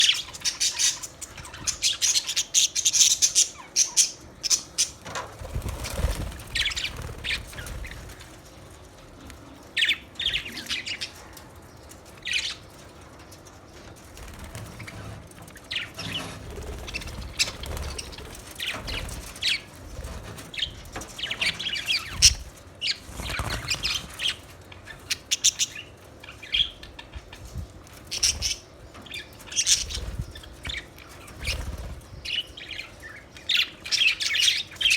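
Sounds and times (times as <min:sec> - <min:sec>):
budgerigars chirping: 0:05.6 - 0:08.2.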